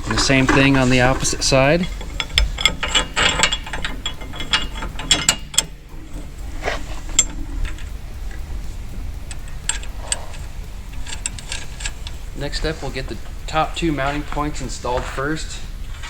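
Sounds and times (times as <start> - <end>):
metallic clicks and clinks of bolting: 0.0 - 16.0.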